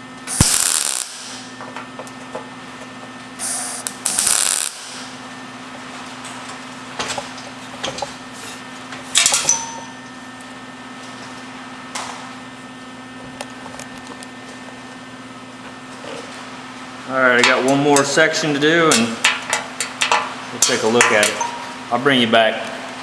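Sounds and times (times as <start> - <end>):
welder electrical hum: 0.0 - 23.0
hissing crackling arc: 0.2 - 2.2, 3.4 - 7.6, 10.4 - 12.6, 15.9 - 21.4.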